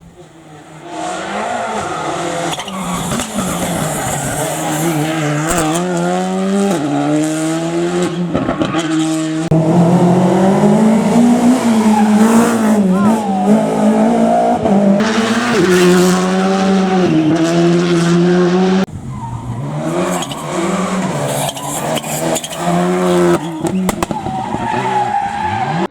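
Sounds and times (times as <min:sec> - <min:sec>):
rally car engines revving hard: 0:00.0 - 0:25.9
tyre noise: 0:01.2 - 0:06.9, 0:18.9 - 0:25.9.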